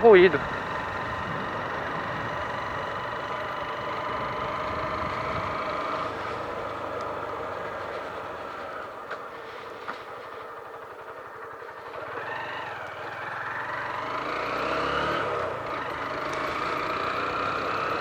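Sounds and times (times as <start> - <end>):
motorcycle engine running: 0.0 - 18.0
wind rushing over microphone: 0.4 - 2.8, 4.2 - 5.8.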